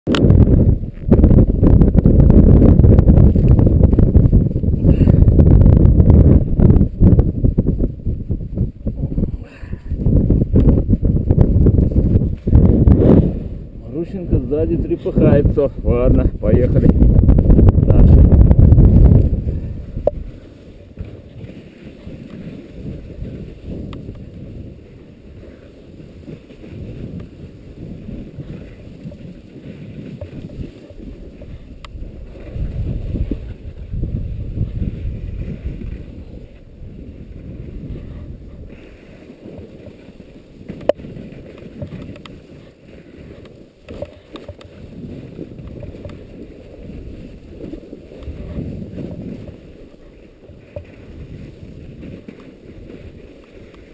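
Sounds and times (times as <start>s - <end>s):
wind buffeting microphone: 0.1s - 53.9s
faint clicks: 40.7s - 42.4s.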